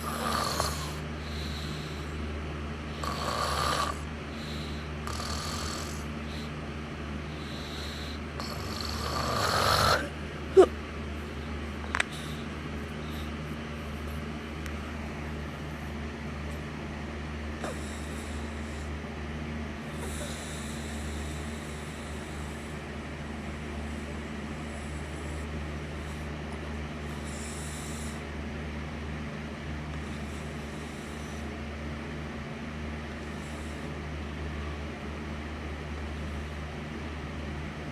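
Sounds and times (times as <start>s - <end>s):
person snoring: 0.0s - 2.2s, 2.9s - 6.5s, 7.3s - 10.7s
steady low hum: 0.0s - 37.9s.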